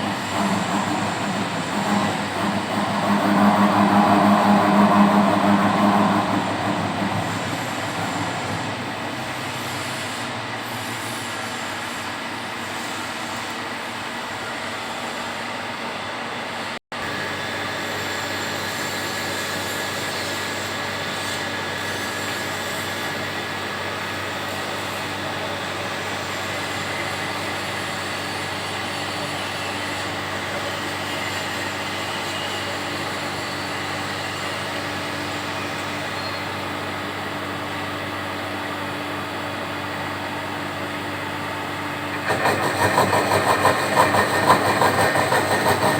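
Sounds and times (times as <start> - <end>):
milling machine humming: 0.0 - 10.4, 26.7 - 45.9
high spindle whine: 0.0 - 10.5.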